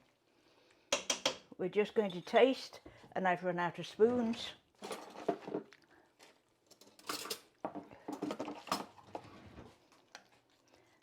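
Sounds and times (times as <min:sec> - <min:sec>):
cutlery and kitchenware clattering: 0:04.8 - 0:05.6, 0:06.7 - 0:07.5.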